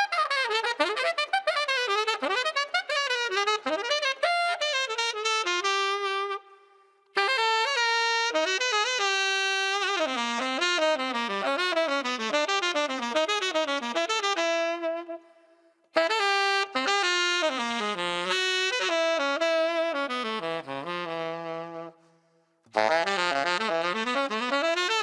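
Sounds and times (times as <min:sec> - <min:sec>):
tenor saxophone jazz phrase: 0:00.0 - 0:06.5, 0:07.1 - 0:15.2, 0:16.0 - 0:22.0, 0:22.7 - 0:25.0.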